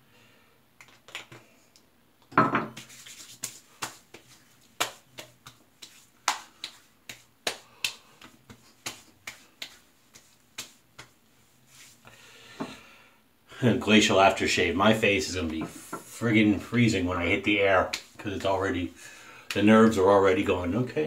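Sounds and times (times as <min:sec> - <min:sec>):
hands patting skin: 0:00.8 - 0:01.8, 0:02.7 - 0:12.1, 0:17.2 - 0:18.6
knock: 0:02.4 - 0:02.8.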